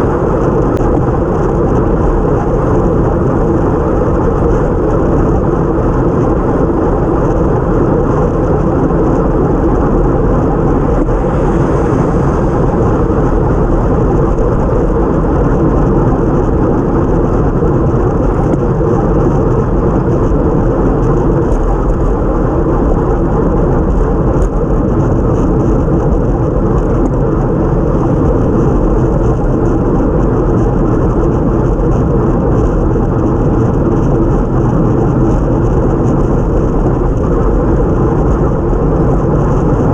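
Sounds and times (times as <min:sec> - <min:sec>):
wind rushing on microphone: 0:00.0 - 0:39.9
tyres hissing on wet road: 0:10.6 - 0:14.8.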